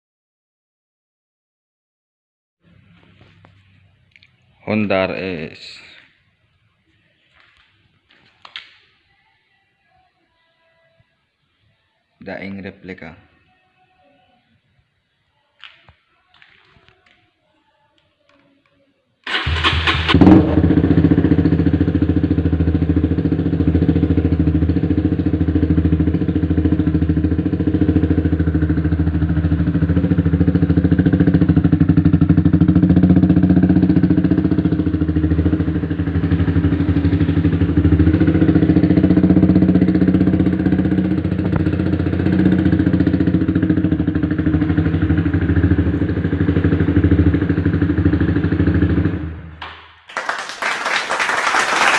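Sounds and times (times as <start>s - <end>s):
motorcycle engine idling: 19.3s - 49.6s.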